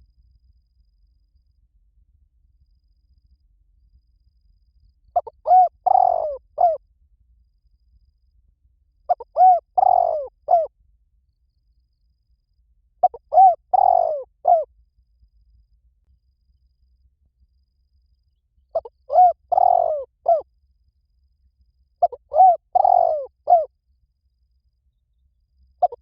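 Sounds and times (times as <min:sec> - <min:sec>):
dove cooing: 0:05.2 - 0:06.8, 0:09.1 - 0:10.7, 0:13.0 - 0:14.7, 0:18.8 - 0:20.4, 0:22.0 - 0:23.7.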